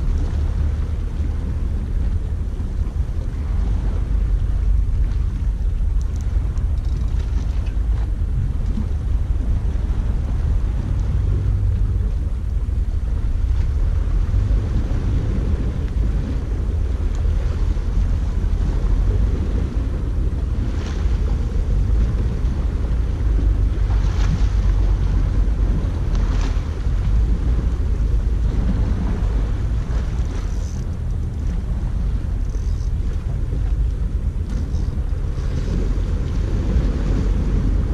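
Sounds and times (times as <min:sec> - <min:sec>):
sea: 0:00.0 - 0:37.9
wind buffeting microphone: 0:00.0 - 0:37.9
faint ticks: 0:05.1 - 0:09.0, 0:17.0 - 0:17.3, 0:29.7 - 0:36.4.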